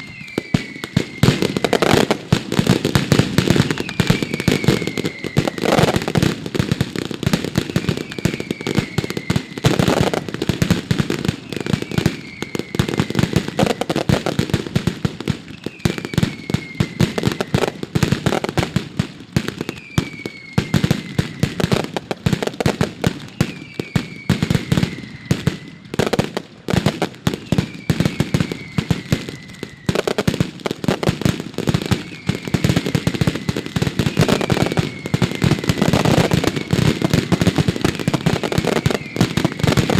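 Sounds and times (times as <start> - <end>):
falling whistle: 0.0 - 6.3, 7.6 - 10.3, 11.3 - 14.3, 15.5 - 18.5, 19.5 - 21.8, 23.2 - 26.4, 27.3 - 30.3, 31.6 - 39.9
rattle of firecrackers: 0.0 - 39.9.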